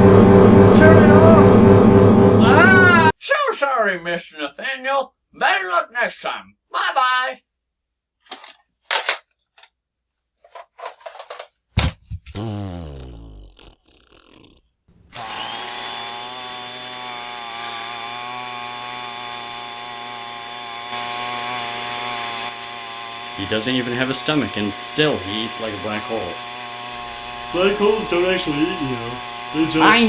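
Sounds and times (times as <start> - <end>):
falling pitched glide: 0.0 - 3.1, 12.4 - 14.6
small motor whirring: 12.4 - 17.7.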